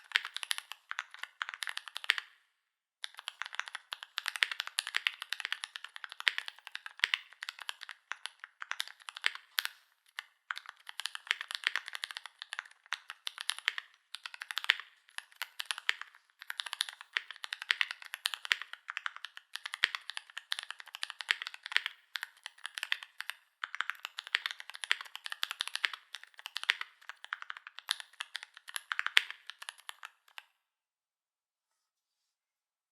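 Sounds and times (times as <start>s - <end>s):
mechanical keyboard typing: 0.0s - 2.3s, 3.0s - 30.4s.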